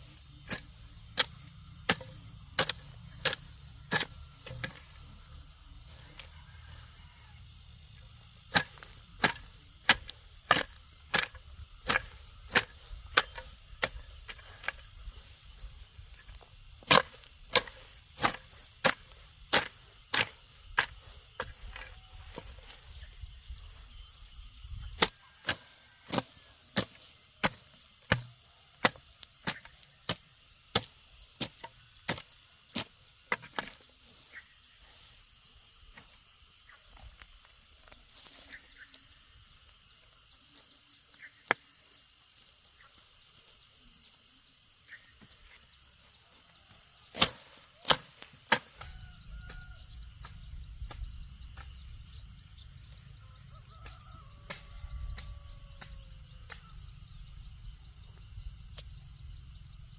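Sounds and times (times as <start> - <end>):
tool striking wood: 26.8 - 30.2.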